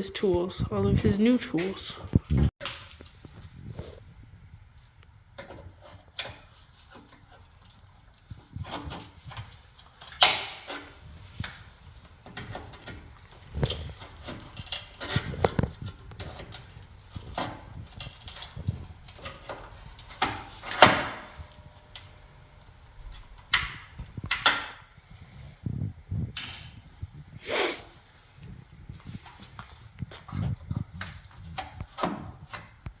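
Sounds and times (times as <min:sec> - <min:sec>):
tools and metal parts clanking: 0:12.3 - 0:22.2.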